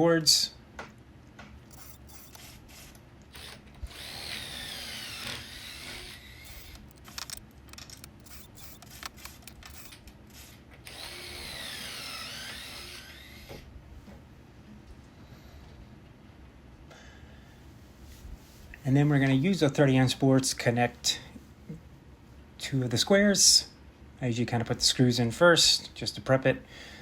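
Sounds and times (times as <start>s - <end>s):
power drill boring into wood: 1.7s - 10.0s, 10.8s - 13.5s
clicks and knocks: 5.9s - 10.0s.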